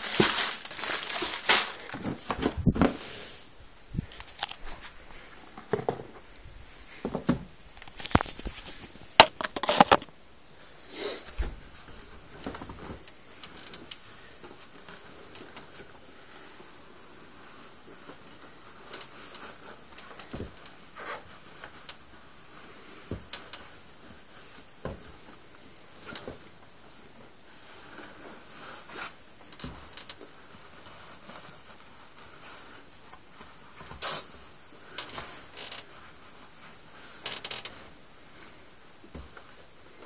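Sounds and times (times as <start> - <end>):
sneakers rubbing and rustling: 2.0 - 10.0.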